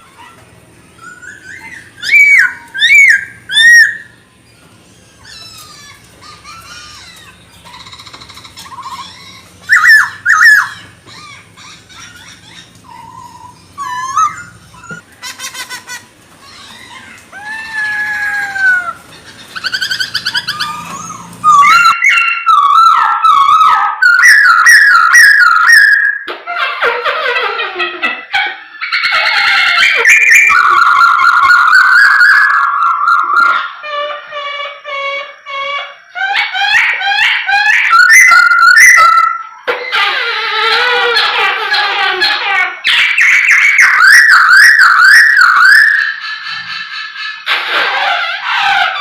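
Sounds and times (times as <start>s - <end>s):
bird singing whistled phrases: 1.0s - 4.5s, 7.6s - 11.0s, 19.6s - 26.3s, 30.0s - 33.6s, 37.7s - 39.6s, 42.9s - 46.7s.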